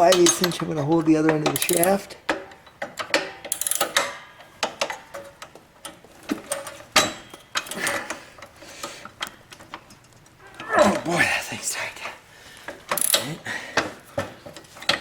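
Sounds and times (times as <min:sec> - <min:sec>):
wrenches clinking on metal: 0:00.0 - 0:08.5, 0:12.8 - 0:13.4, 0:14.4 - 0:15.0.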